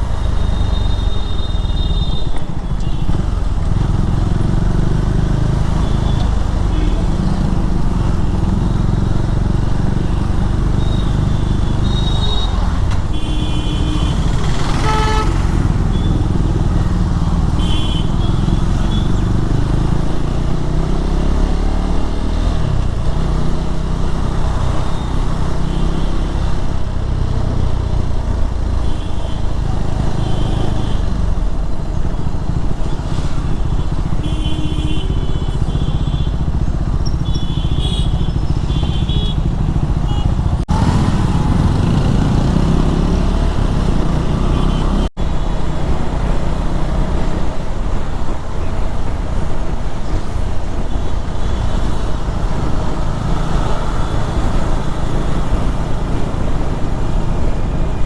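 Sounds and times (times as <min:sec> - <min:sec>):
road noise: 0:00.0 - 0:58.0
motorcycle engine running: 0:22.7 - 0:58.0
wind noise: 0:45.2 - 0:58.0.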